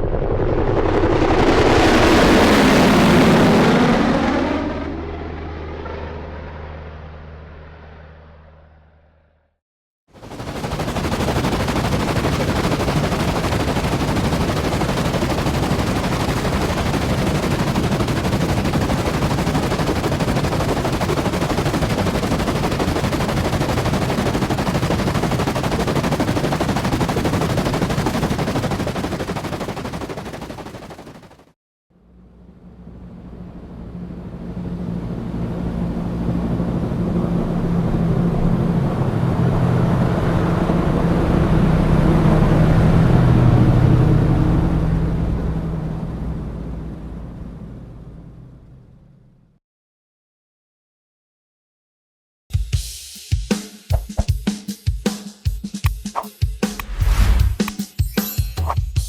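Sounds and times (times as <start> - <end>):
helicopter rotor blades chopping: 0.0 - 8.6, 10.1 - 31.6, 56.2 - 58.8
helicopter low hum: 0.0 - 49.6, 56.7 - 57.7.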